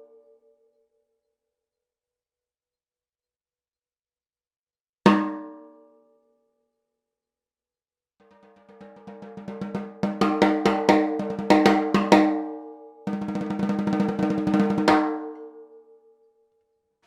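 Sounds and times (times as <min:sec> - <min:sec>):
snare drum roll and strokes: 0:13.1 - 0:15.1.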